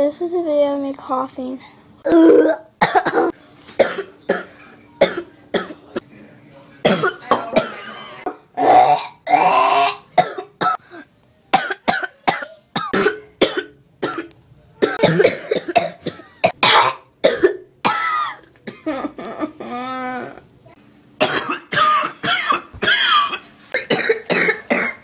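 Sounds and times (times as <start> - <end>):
person coughing: 2.1 - 5.8, 10.2 - 19.8, 21.2 - 25.0.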